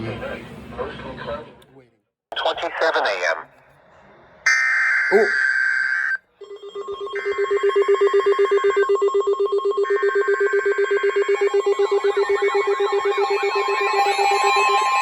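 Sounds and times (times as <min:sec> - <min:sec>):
data-burst screeches: 0:04.5 - 0:06.2
fast-pulsing beep tone: 0:04.5 - 0:06.2
steady high tone: 0:04.5 - 0:09.1
warbling siren alarm: 0:04.5 - 0:15.0.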